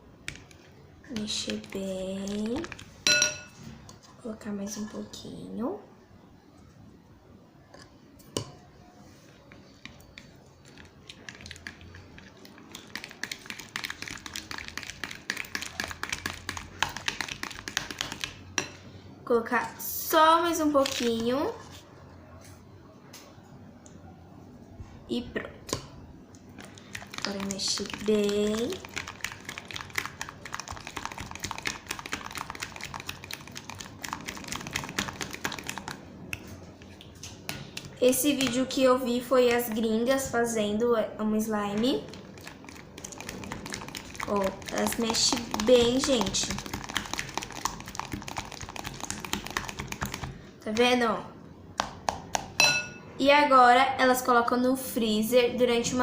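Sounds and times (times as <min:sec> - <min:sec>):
utensil stirring slime: 0:00.2 - 0:03.3, 0:09.2 - 0:18.7, 0:26.4 - 0:40.7, 0:41.4 - 0:51.0.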